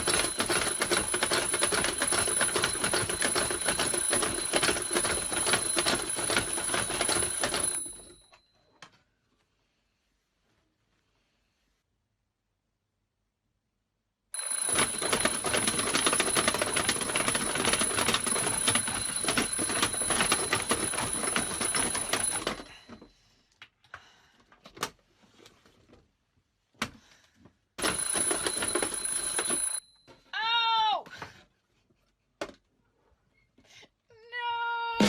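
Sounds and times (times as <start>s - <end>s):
bell alarm clock ringing: 0.0s - 8.4s, 14.4s - 22.9s, 27.8s - 30.0s.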